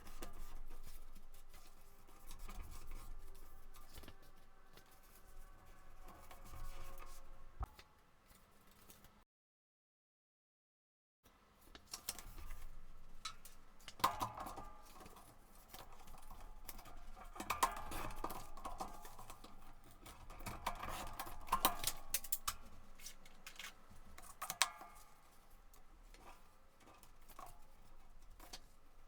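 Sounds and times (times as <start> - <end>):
paper rustling and crinkling: 0.0 - 9.2.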